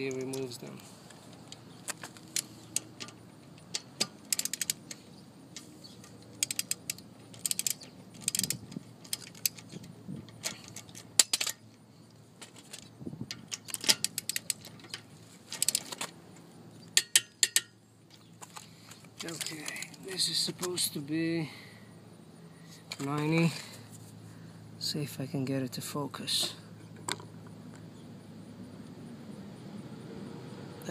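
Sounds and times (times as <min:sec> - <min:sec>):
hand ratchet clicking: 0:01.9 - 0:05.0, 0:05.6 - 0:11.6, 0:13.3 - 0:16.0, 0:17.0 - 0:17.7.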